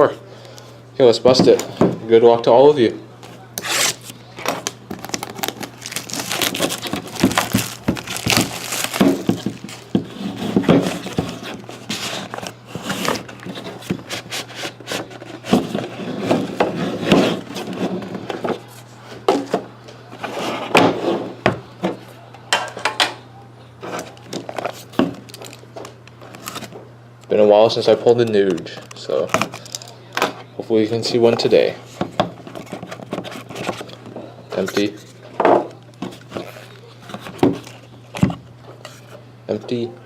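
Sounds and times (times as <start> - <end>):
plastic shrink-wrap crinkling: 3.6 - 14.4, 24.6 - 26.7
cardboard rustling and tearing: 3.6 - 18.1, 26.2 - 26.7.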